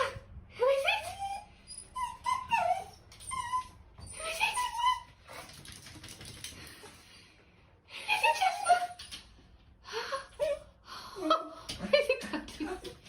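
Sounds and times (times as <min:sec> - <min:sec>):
dog whining: 0:00.8 - 0:05.4.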